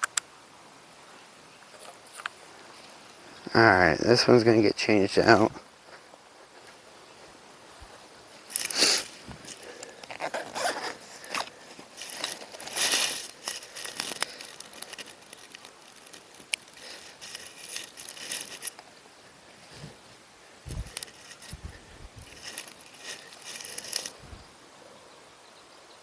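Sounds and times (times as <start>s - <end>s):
rustling and clicks of gear: 8.4s - 19.0s, 20.7s - 24.2s
zipper being pulled: 8.6s - 15.3s, 16.8s - 18.7s, 22.2s - 24.1s.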